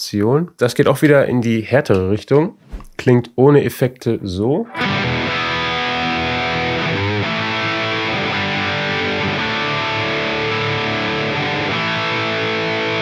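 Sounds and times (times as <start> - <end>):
distorted electric guitar: 4.7 - 13.0.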